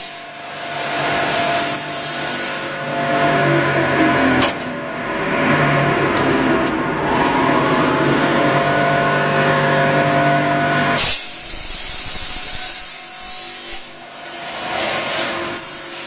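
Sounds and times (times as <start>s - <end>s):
saw rasping through steel: 0.0s - 3.5s, 7.1s - 16.0s
machine motor hum: 0.2s - 14.0s
sharp metal clash: 11.0s - 14.0s.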